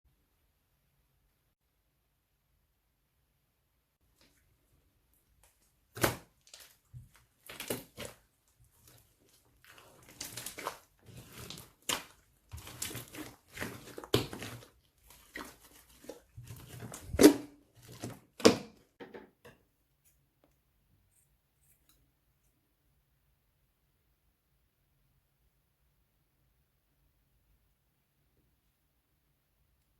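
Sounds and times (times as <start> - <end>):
plastic rustling and crinkling: 5.2 - 18.4.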